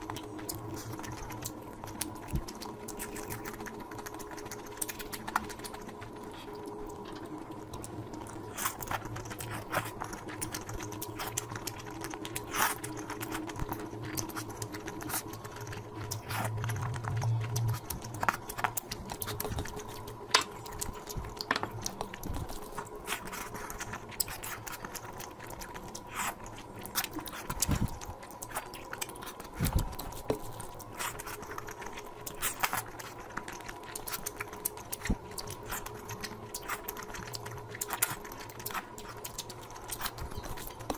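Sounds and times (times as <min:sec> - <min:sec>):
steady low hum: 0:00.0 - 0:40.9
wet chewing and mouth sounds: 0:00.0 - 0:40.9.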